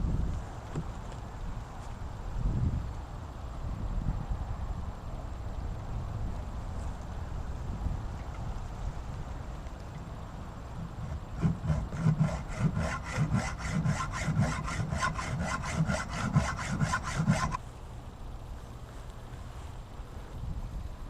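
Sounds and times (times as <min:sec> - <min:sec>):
hacksaw cutting metal rod: 0:11.0 - 0:17.6.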